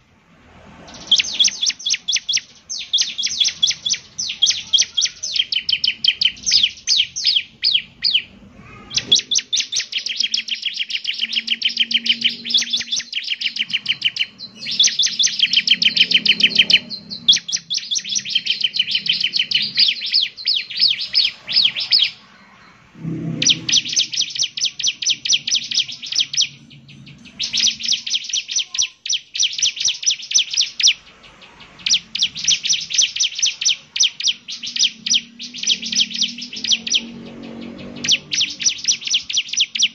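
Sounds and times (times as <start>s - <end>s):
bird singing rapid trills: 0.9s - 39.9s.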